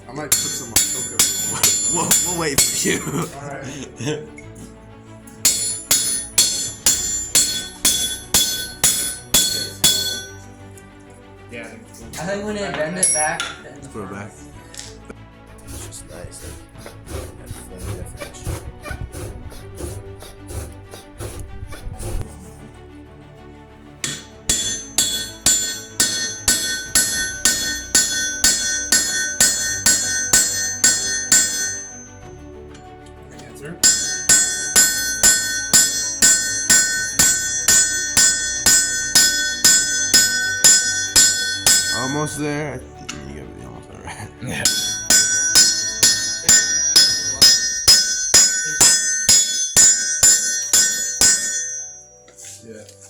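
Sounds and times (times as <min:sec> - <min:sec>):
hammer ringing on anvil: 0:00.3 - 0:03.2, 0:05.4 - 0:10.5, 0:12.8 - 0:13.6, 0:24.0 - 0:32.3, 0:33.8 - 0:43.2, 0:44.6 - 0:52.0.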